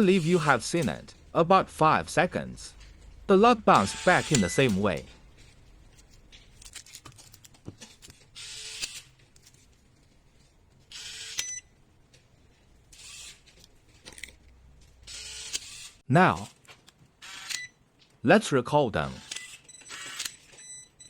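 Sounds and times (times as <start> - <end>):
mechanical whirring: 0.0 - 7.1, 10.8 - 11.6, 12.8 - 16.0.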